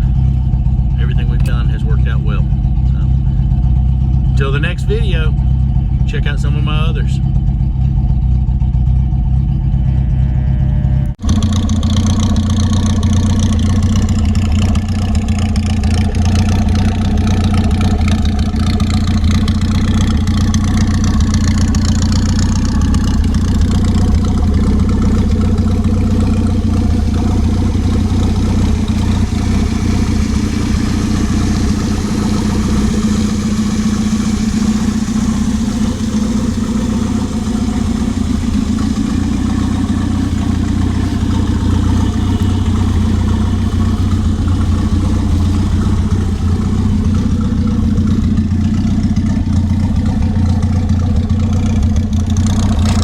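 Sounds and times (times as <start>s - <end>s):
car engine idling: 0.0s - 53.0s
engine hiss: 11.1s - 53.0s.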